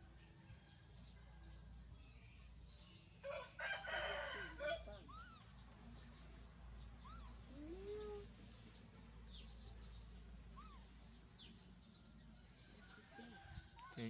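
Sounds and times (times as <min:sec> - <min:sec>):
rooster crowing: 0:03.2 - 0:05.0, 0:12.8 - 0:14.0
faint bird chirps: 0:04.6 - 0:14.0.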